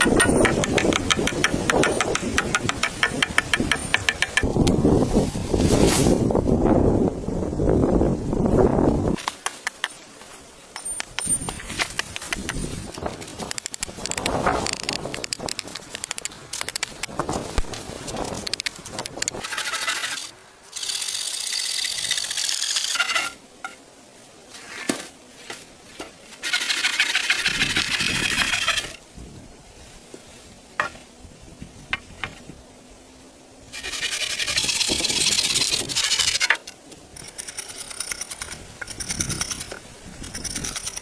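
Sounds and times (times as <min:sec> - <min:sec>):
hand tool rasping wood: 0:00.0 - 0:04.5, 0:18.3 - 0:23.4, 0:26.4 - 0:29.0, 0:33.8 - 0:41.0
sharp knocks and clicks: 0:00.0 - 0:04.5.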